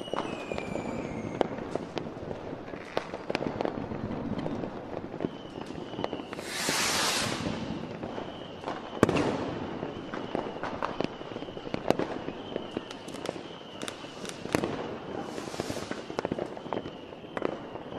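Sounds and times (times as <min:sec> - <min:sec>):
firework bangs: 0:00.0 - 0:17.9
rocket rushing hiss: 0:06.2 - 0:08.0, 0:15.2 - 0:16.2.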